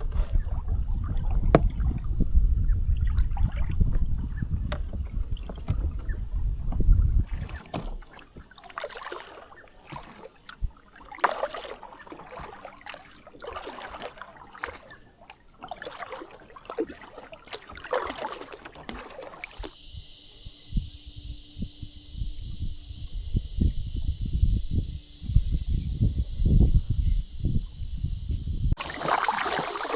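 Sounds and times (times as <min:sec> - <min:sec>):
wind rumbling on microphone: 0:00.0 - 0:08.9, 0:09.6 - 0:29.9
water splashing around kayak: 0:00.0 - 0:19.9, 0:28.7 - 0:29.9.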